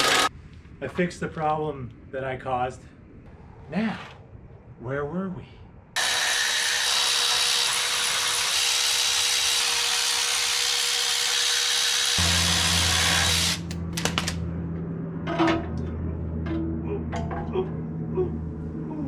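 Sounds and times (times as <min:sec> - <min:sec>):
power tool running: 0:00.0 - 0:00.3, 0:06.0 - 0:14.4
low steady hum: 0:12.2 - 0:19.0.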